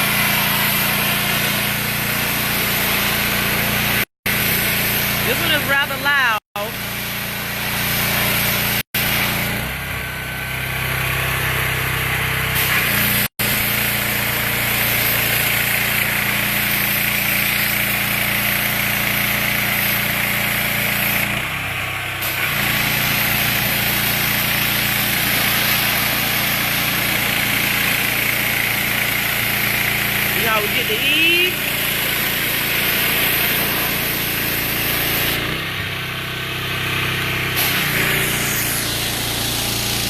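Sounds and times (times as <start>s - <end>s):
water jet hissing: 0.0s - 9.4s, 22.2s - 35.4s, 37.5s - 40.0s
pressure washer engine humming: 0.0s - 40.0s.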